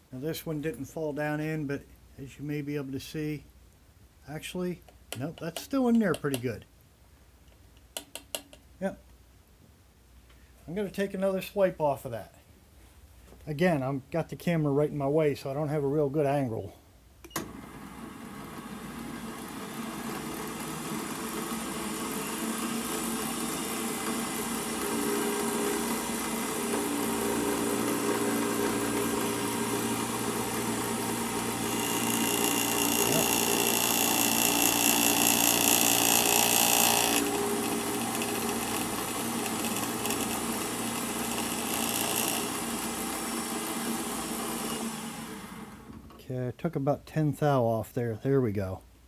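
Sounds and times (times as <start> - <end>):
milling machine motor hum: 17.4 - 46.0.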